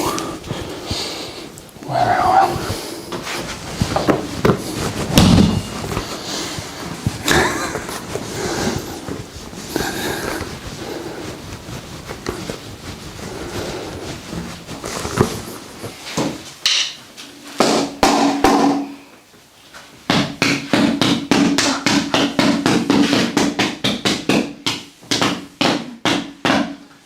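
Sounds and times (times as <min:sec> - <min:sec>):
massage slaps on body: 0:03.1 - 0:17.0, 0:20.0 - 0:26.8.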